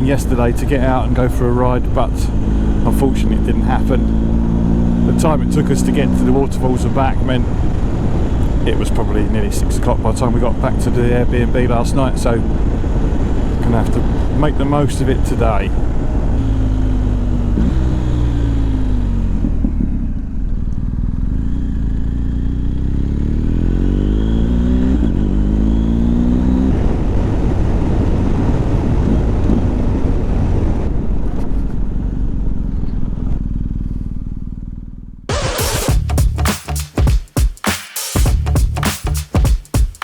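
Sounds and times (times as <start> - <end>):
motorcycle engine accelerating: 0.0 - 14.2, 15.8 - 37.4
music with a beat: 35.3 - 40.0.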